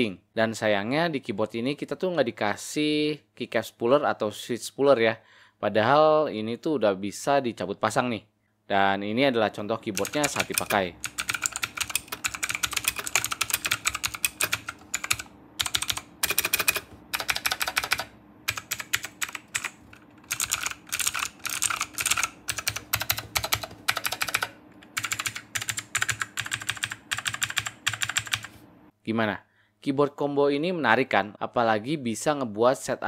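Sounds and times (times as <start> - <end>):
clicky mechanical keyboard typing: 9.9 - 28.6.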